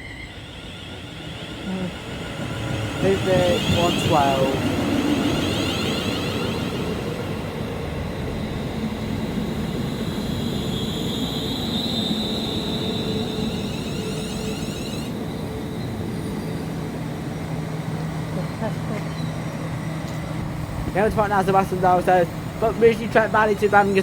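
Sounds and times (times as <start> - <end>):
electric train rumbling: 0.0 - 24.0
faint high whine: 9.1 - 16.8, 20.9 - 24.0.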